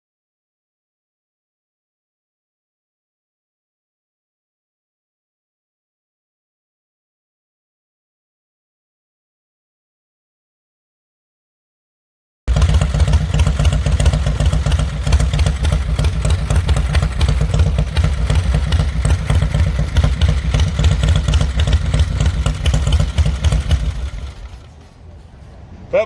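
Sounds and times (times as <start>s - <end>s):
small engine idling: 12.5s - 25.5s.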